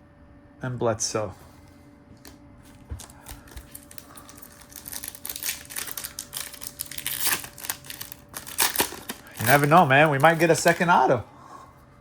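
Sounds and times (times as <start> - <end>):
cards being flipped through: 2.2 - 10.9.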